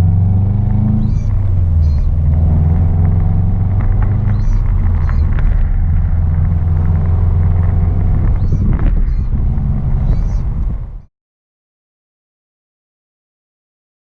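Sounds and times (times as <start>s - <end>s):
car engine rumbling: 0.0s - 11.1s.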